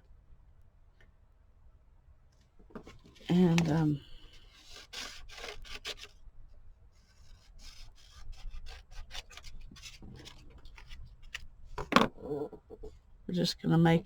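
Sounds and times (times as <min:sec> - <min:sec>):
drawing tool scratching on paper: 0:04.5 - 0:06.1, 0:07.1 - 0:10.4.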